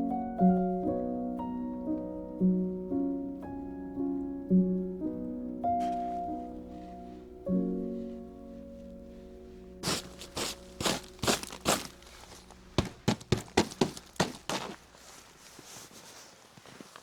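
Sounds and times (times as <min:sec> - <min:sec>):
footsteps crunching in snow: 0:05.8 - 0:06.3, 0:09.8 - 0:17.0.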